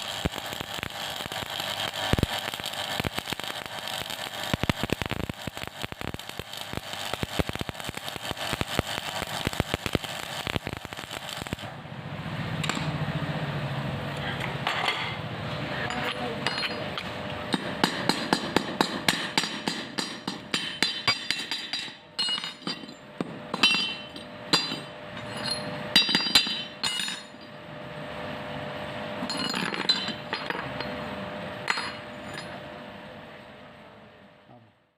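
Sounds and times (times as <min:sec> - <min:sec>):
arc welding crackle: 0:00.0 - 0:11.8
hammer strikes on steel: 0:17.5 - 0:27.2.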